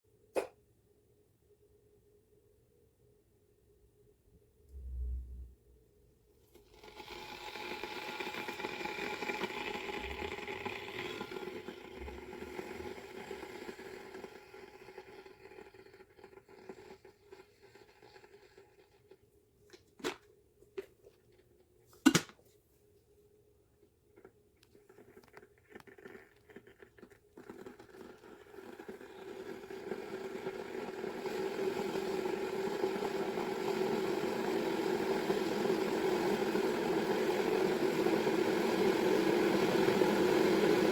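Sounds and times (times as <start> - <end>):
electric kettle rushing: 6.5 - 19.2, 25.2 - 40.9.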